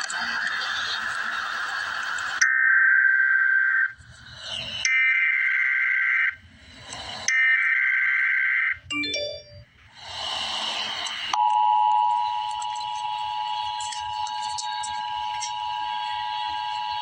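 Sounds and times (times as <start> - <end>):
digital data bursts: 0.0 - 6.4, 7.1 - 17.0
two-tone attention signal: 8.9 - 9.7, 11.4 - 17.0
hiss: 10.0 - 11.4.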